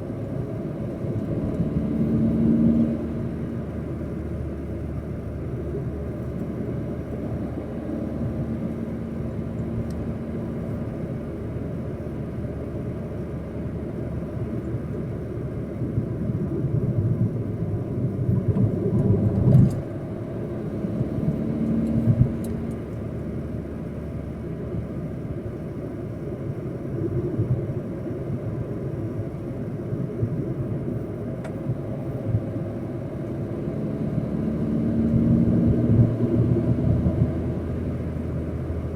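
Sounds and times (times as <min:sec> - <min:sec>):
car engine low rumble: 0:00.0 - 0:38.9.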